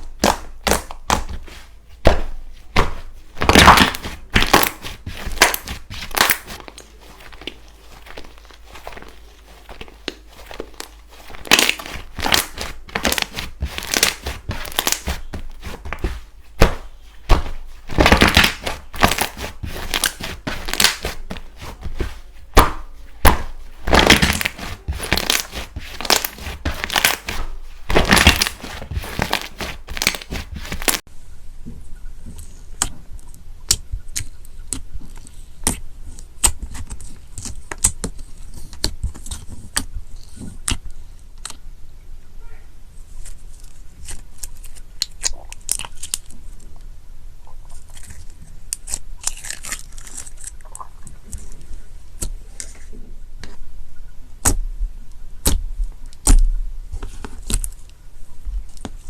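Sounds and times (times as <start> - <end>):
slime crackling squeezed by hand: 0.0 - 31.0.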